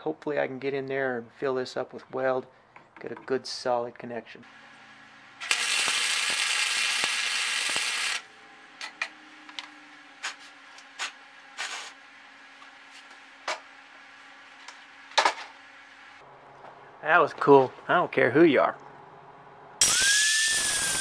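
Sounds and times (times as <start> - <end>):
welding arc crackling: 5.4 - 8.3, 19.8 - 21.0.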